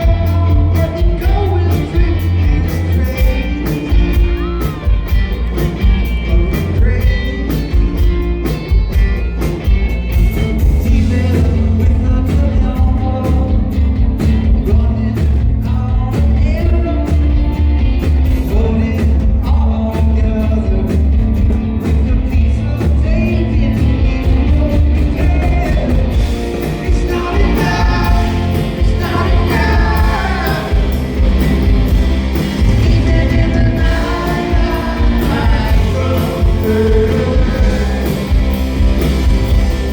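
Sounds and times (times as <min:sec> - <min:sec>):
person singing: 0:00.0 - 0:09.4, 0:21.8 - 0:39.9
live rock band: 0:00.0 - 0:39.9
drum beat: 0:24.3 - 0:39.9.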